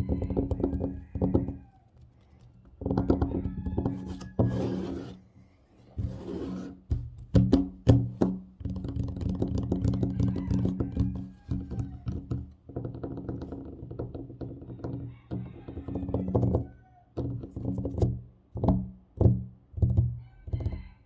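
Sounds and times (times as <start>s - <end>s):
scratching across table surface: 0.1s - 7.0s
fingertips tapping on table: 6.1s - 20.0s.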